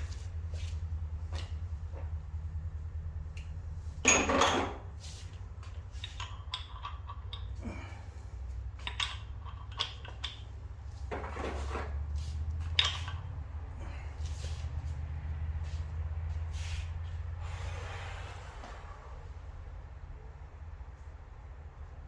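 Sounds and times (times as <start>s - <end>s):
steady low hum: 0.0s - 22.0s
metal parts clanking: 4.0s - 4.9s, 8.8s - 10.5s, 12.6s - 13.3s.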